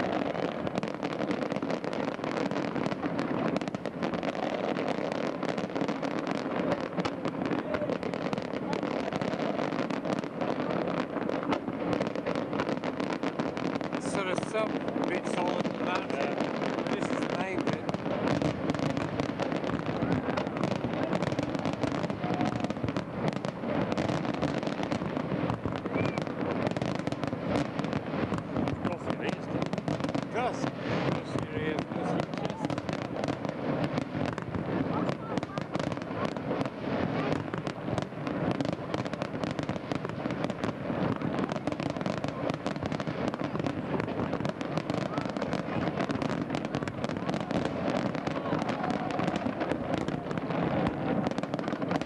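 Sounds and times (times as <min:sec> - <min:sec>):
fireworks crackling and popping: 0:00.0 - 0:52.0.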